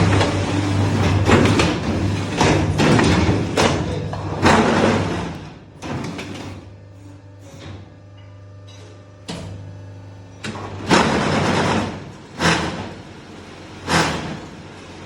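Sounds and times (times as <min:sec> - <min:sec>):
press clanking and thudding: 0:00.0 - 0:06.7
machine motor humming: 0:00.0 - 0:15.0.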